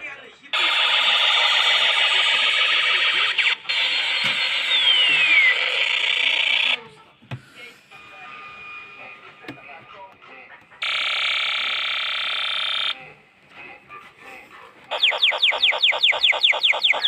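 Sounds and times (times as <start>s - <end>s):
pulsing electronic alarm buzz: 0.6s - 6.8s, 10.8s - 13.0s, 14.9s - 17.0s.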